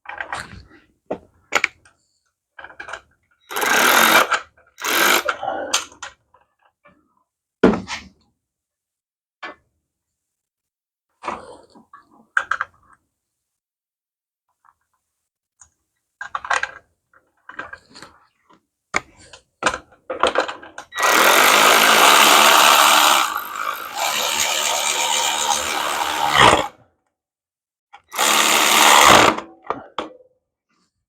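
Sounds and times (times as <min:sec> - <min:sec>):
power tool running: 0:03.5 - 0:05.3, 0:21.0 - 0:26.7, 0:28.1 - 0:29.4.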